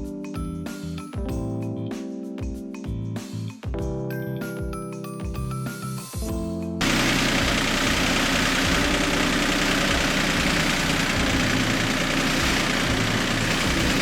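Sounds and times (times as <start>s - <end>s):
music: 0.0s - 14.0s
tractor engine running: 6.8s - 14.0s.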